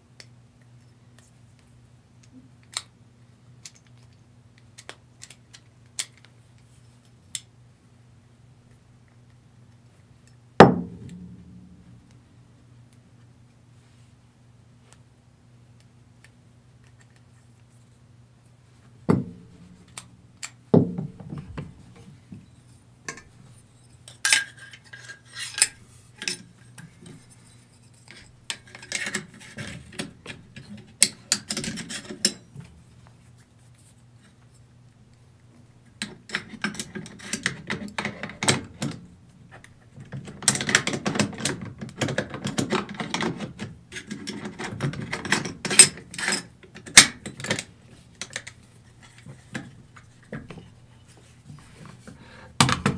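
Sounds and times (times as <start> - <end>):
rifle parts clicking and rattling: 24.0 - 32.5, 36.0 - 39.0, 39.6 - 50.7.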